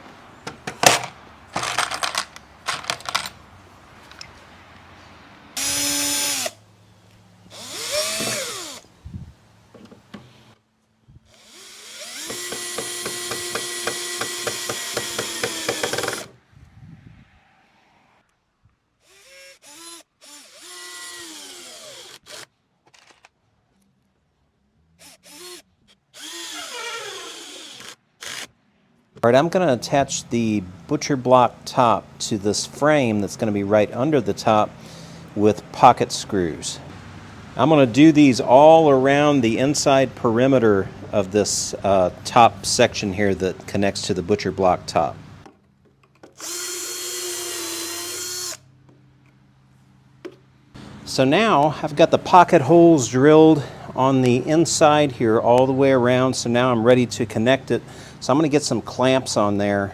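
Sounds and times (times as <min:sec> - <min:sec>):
handling clicks and knocks: 0:00.4 - 0:03.4
cordless drill driving screws: 0:05.6 - 0:06.6, 0:07.5 - 0:08.8, 0:11.3 - 0:16.4, 0:19.0 - 0:22.5, 0:25.0 - 0:28.5, 0:46.3 - 0:48.6.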